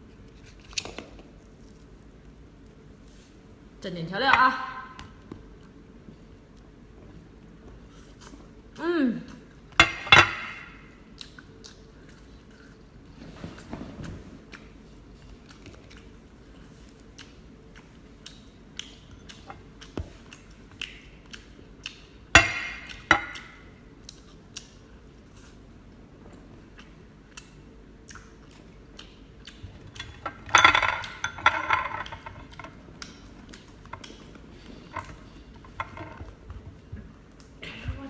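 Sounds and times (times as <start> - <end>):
clinks against dishes: 9.8 - 10.7, 30.2 - 32.4.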